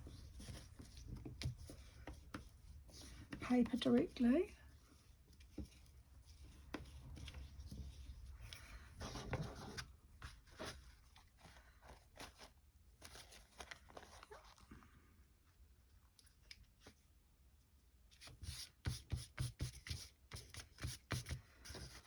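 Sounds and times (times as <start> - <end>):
paper rustling and tapping: 0.4 - 4.3.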